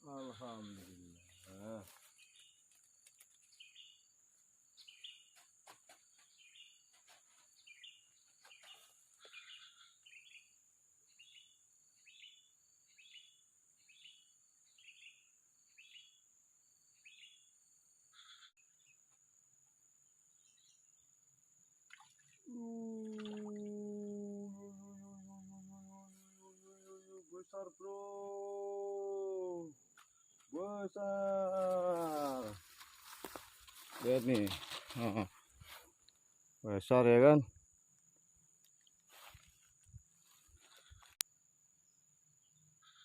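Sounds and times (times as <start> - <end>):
bird chirping: 0.0 - 19.2.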